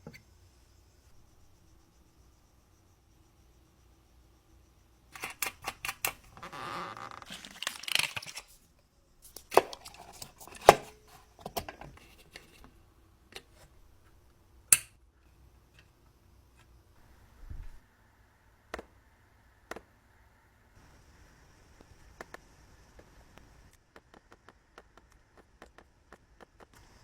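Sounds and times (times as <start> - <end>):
rustling scrape: 9.6 - 12.7.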